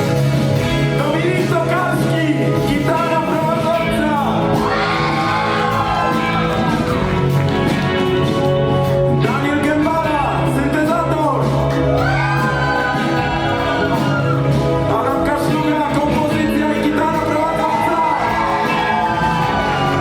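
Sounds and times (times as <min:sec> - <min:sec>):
bass notes: 0:00.0 - 0:20.0
live band playing: 0:00.0 - 0:20.0.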